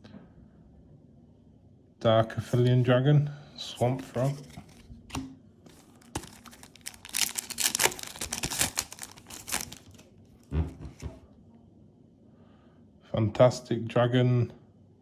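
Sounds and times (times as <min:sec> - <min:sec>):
foil wrapper crinkling and tearing: 0:05.7 - 0:10.1.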